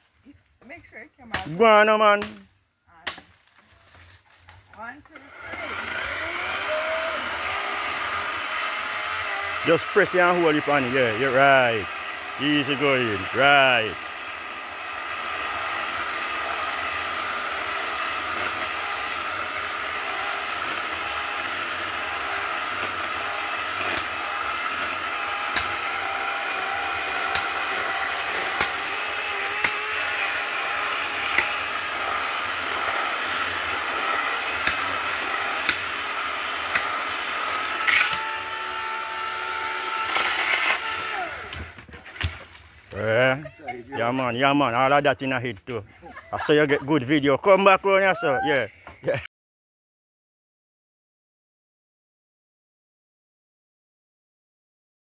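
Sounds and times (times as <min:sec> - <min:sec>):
chainsaw cutting wood: 0:04.7 - 0:43.0.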